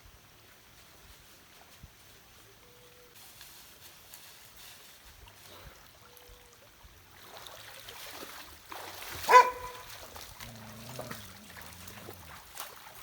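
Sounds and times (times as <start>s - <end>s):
water trickling and sloshing: 4.7s - 13.0s
dog barking: 9.3s - 9.8s.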